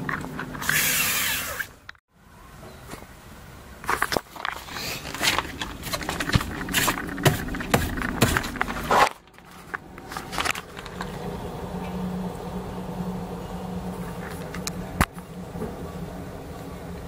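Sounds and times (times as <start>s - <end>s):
rattling and clicking: 3.9s - 11.2s
steady low hum: 4.6s - 17.0s.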